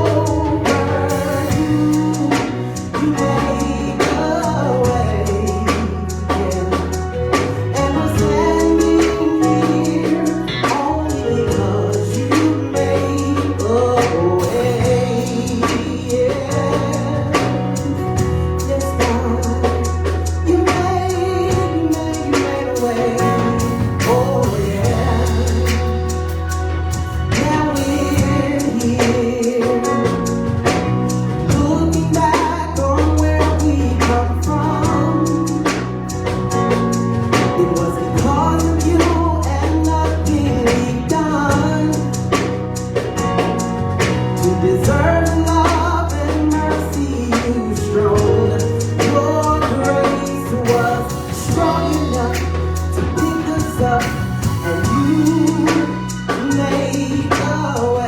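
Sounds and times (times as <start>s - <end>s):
bass guitar: 0.0s - 58.0s
drum kit: 0.0s - 58.0s.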